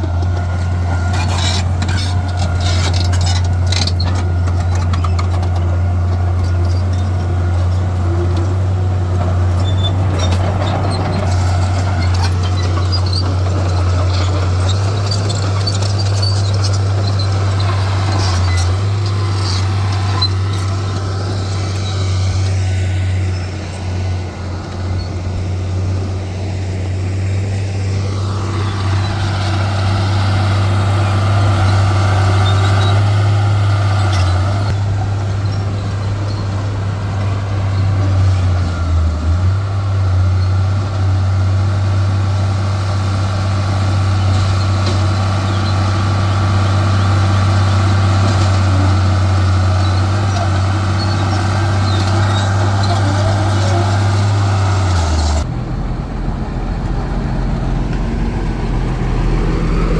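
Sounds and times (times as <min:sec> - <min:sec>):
higher mechanical noise: 0:00.0 - 0:42.0
heavy diesel engine droning: 0:00.0 - 0:59.9.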